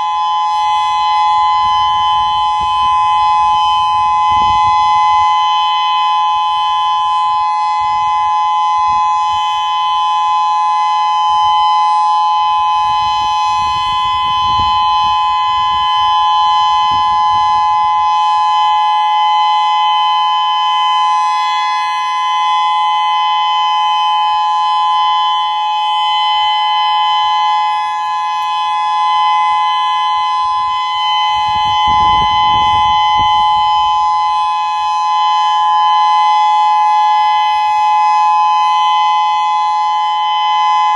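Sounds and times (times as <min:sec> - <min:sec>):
electronic warning siren tone: 0:00.0 - 0:40.9.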